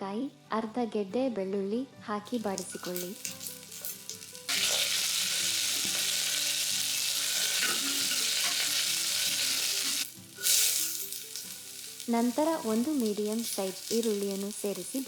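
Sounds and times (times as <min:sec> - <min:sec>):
mustard seeds spluttering: 0:02.3 - 0:06.9, 0:09.3 - 0:15.0
spices sizzling in hot oil: 0:02.3 - 0:15.0.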